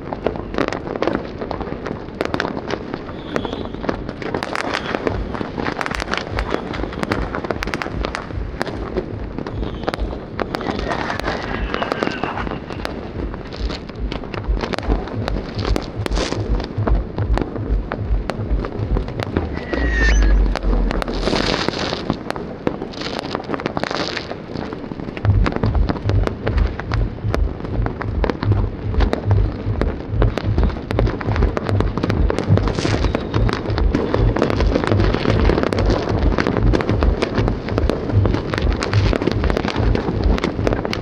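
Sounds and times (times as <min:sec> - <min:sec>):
fireworks bangs and crackles: 0:00.0 - 0:41.0
faint falling whistle: 0:10.6 - 0:12.8, 0:19.4 - 0:21.2.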